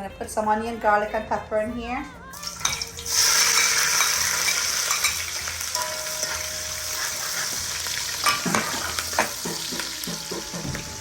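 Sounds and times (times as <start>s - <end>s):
food sizzling in hot oil: 2.3s - 11.0s.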